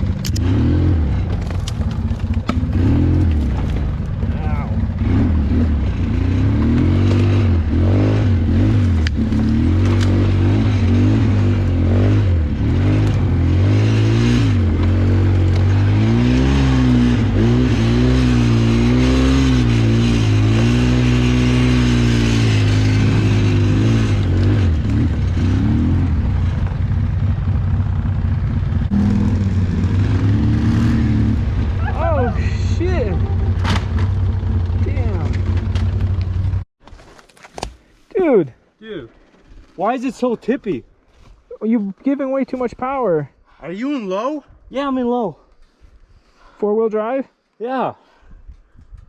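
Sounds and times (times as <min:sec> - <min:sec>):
atv engine revving: 0:00.0 - 0:36.6.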